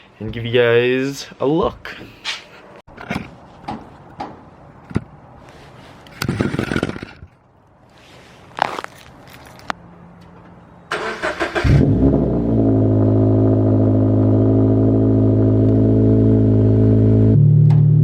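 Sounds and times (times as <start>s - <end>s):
car engine revving and idling: 11.1s - 18.0s.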